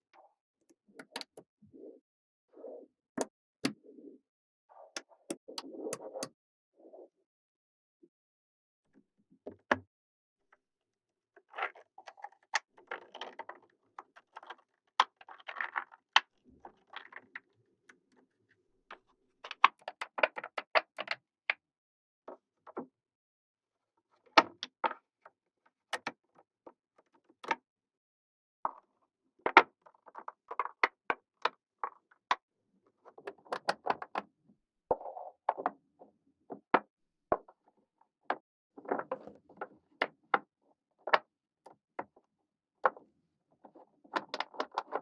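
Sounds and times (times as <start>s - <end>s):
magnetic balls clicking: 1.0s - 1.4s.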